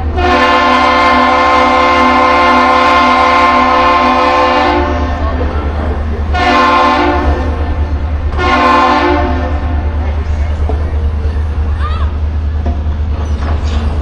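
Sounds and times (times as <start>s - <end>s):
deep ship horn blasts: 0.0s - 5.5s, 6.3s - 10.0s.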